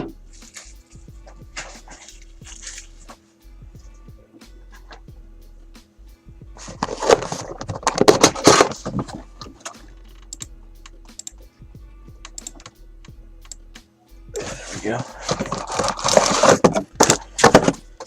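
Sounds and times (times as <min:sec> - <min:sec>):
wrapper crinkling and tearing: 0:14.5 - 0:17.5.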